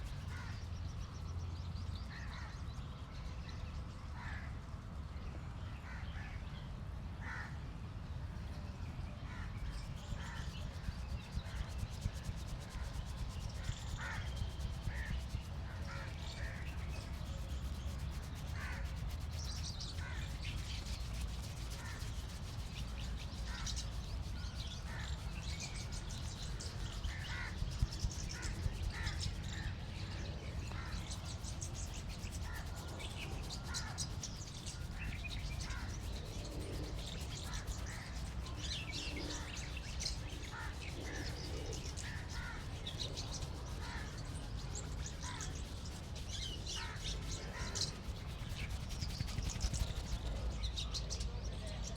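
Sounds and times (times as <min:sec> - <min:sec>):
small birds chirping: 0:00.0 - 0:04.6, 0:08.4 - 0:51.9
steady low rumble: 0:00.0 - 0:51.9
crows cawing: 0:14.0 - 0:14.3, 0:27.0 - 0:27.6, 0:28.3 - 0:29.6, 0:40.5 - 0:41.3, 0:42.0 - 0:43.0.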